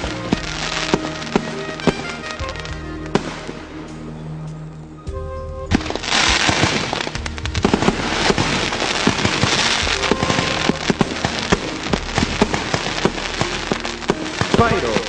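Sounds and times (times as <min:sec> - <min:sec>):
fireworks crackling and banging: 0:00.0 - 0:04.6, 0:05.7 - 0:15.0
music playing: 0:00.0 - 0:15.0.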